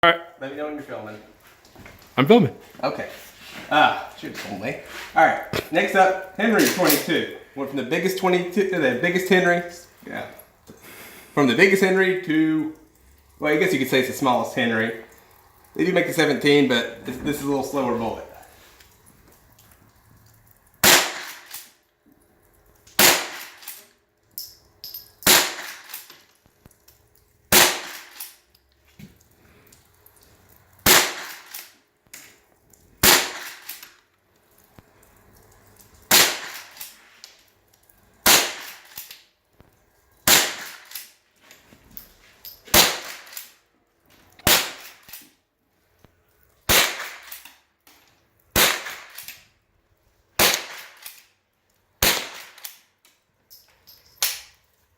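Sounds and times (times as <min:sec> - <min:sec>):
rifle shots with echo: 0:27.5 - 0:28.2, 0:30.8 - 0:31.5, 0:33.0 - 0:33.7, 0:36.1 - 0:36.8, 0:46.7 - 0:47.4, 0:48.6 - 0:49.2, 0:50.4 - 0:51.0, 0:52.0 - 0:52.6.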